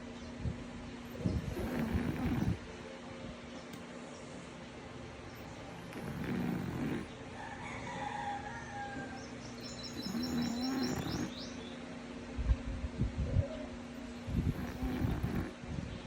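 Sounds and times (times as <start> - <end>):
dog snoring: 1.1 - 2.7, 5.4 - 7.2, 9.8 - 11.4, 14.3 - 15.6.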